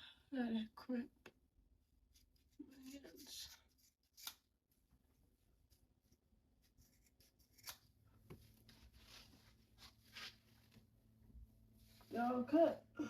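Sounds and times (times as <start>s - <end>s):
scissors snipping hair: 2.8s - 4.5s, 6.8s - 7.9s.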